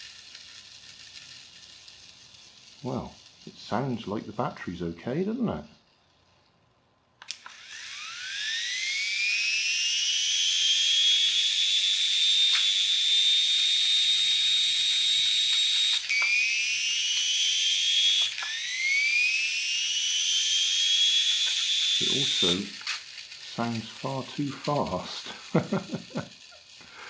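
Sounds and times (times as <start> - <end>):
toy motorbike electric motor whining: 0.0 - 6.6, 7.2 - 27.0.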